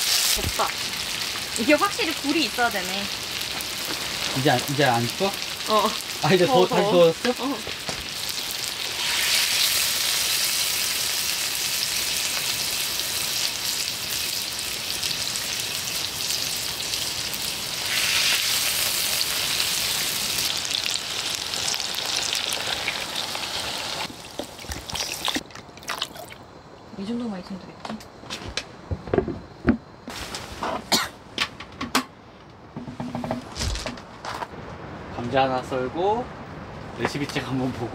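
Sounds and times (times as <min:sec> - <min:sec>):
food sizzling in oil: 0:00.0 - 0:26.4.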